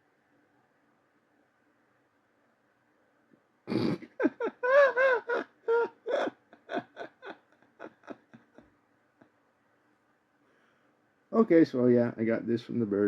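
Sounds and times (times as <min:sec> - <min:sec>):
man laughing high-pitched: 0:03.7 - 0:08.6.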